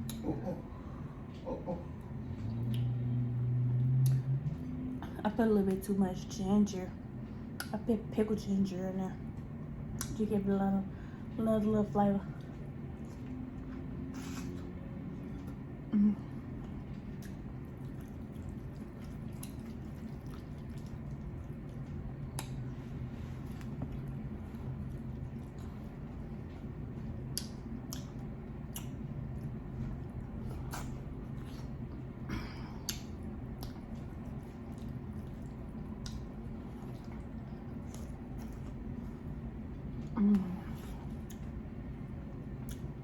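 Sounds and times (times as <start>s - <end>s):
lip smacks: 0.0s - 0.3s, 2.5s - 2.9s, 4.0s - 4.3s, 7.5s - 7.8s, 9.9s - 10.2s, 17.0s - 21.6s, 22.2s - 22.9s, 27.2s - 29.4s, 30.4s - 32.1s, 32.8s - 38.9s, 42.6s - 43.0s
low hum: 0.0s - 43.0s
wet squishy eating: 12.3s - 43.0s
person chewing: 16.5s - 41.6s, 42.5s - 43.0s.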